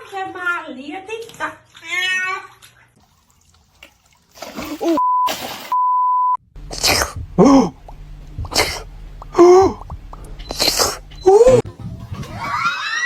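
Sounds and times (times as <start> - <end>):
censor bleep tone: 5.0 - 6.4
person sneezing: 6.7 - 7.8, 8.4 - 9.8, 10.5 - 11.6.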